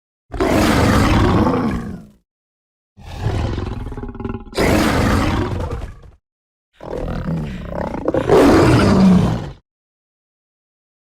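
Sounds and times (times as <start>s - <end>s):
dinosaur growling and roaring: 0.3s - 2.2s, 3.0s - 6.2s, 6.8s - 9.6s.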